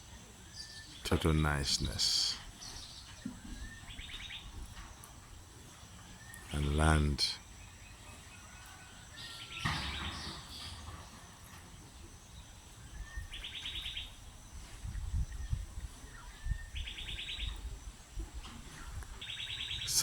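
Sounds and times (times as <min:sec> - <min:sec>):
songbird singing trill: 0:00.0 - 0:20.0
low wind rumble: 0:12.5 - 0:20.0.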